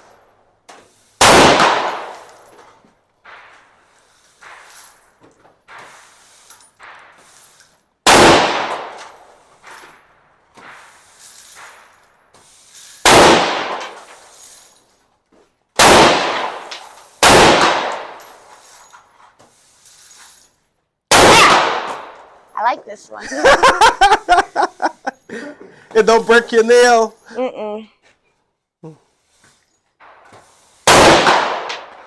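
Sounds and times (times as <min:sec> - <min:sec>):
distant gunshots: 0:01.2 - 0:02.2, 0:08.1 - 0:09.0, 0:13.1 - 0:14.0, 0:15.8 - 0:18.2, 0:21.1 - 0:22.2, 0:30.9 - 0:32.0
rifle shots echoing: 0:01.2 - 0:02.3, 0:08.0 - 0:09.3, 0:13.0 - 0:14.0, 0:15.8 - 0:18.5, 0:21.1 - 0:22.2, 0:30.8 - 0:32.0.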